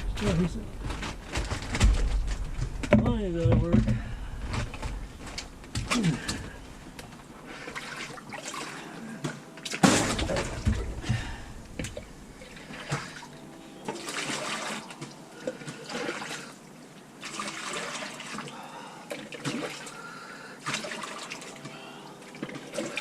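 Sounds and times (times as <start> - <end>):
water pouring into a bucket: 13.9 - 16.6, 17.2 - 23.0.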